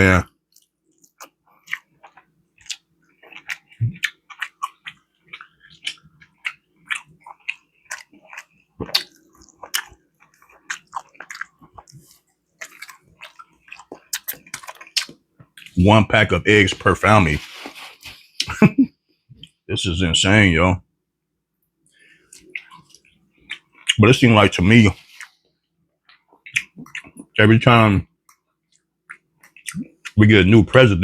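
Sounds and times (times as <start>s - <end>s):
chewing food: 0.4s - 15.8s, 21.8s - 24.1s, 24.8s - 27.4s, 28.2s - 30.2s
wet mouth smacks: 7.9s - 9.9s.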